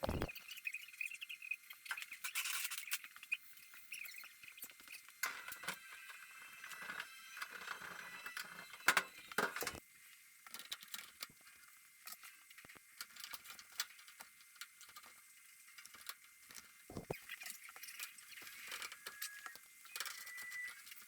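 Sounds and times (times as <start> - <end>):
clicks knocks and squeaks: 0.0 - 5.6, 16.9 - 21.0.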